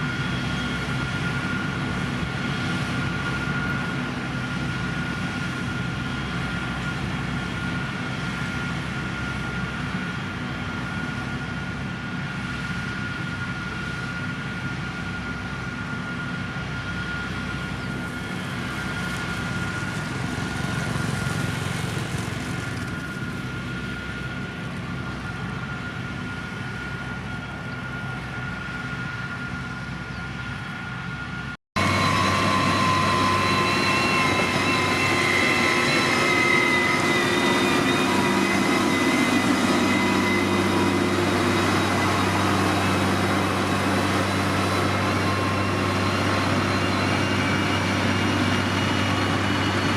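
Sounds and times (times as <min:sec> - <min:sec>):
diesel engine drone: 0:00.0 - 0:49.9
high machine whine: 0:00.0 - 0:49.9
high machine tones: 0:31.8 - 0:49.9.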